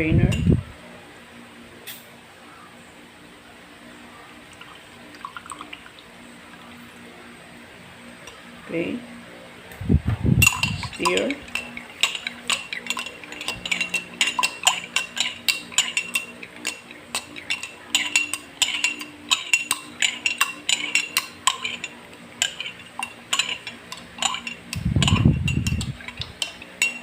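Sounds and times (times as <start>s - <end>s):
spoon clinking against container: 0.2s - 0.6s, 10.4s - 27.0s.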